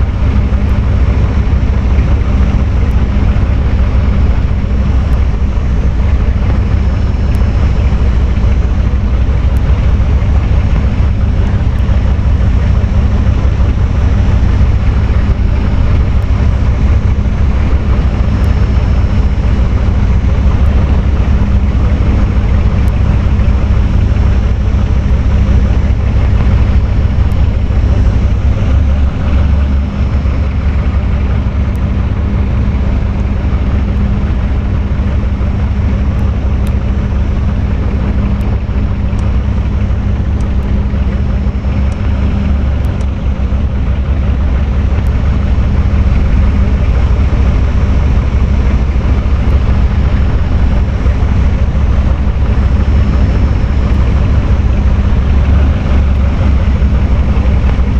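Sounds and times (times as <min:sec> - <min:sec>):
electric fan air rush: 0:00.0 - 0:57.9
fan motor hum: 0:00.0 - 0:57.9.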